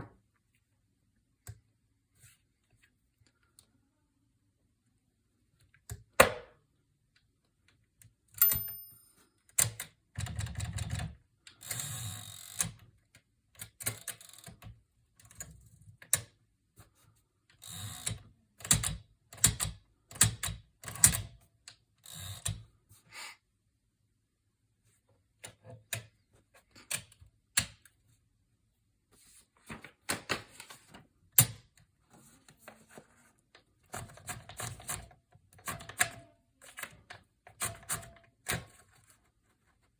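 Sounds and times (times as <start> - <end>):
typewriter bell ring: 8.4 - 9.3
manual typewriter typing: 9.6 - 12.8, 33.8 - 38.8.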